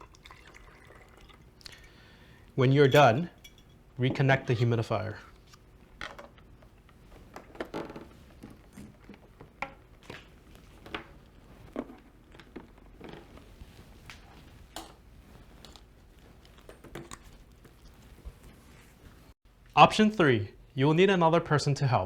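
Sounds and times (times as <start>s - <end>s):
plastic tubing clicks and rustles: 5.5s - 18.0s.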